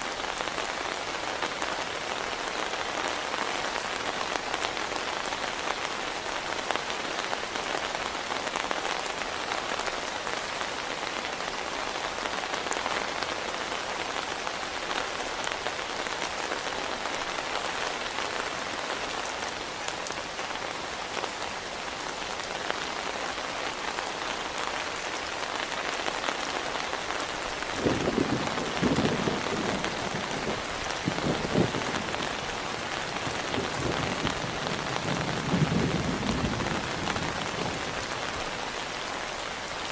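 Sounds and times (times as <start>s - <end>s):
heavy rain falling: 0.0s - 39.9s
low thunder rumbling: 27.8s - 32.6s, 33.2s - 37.9s.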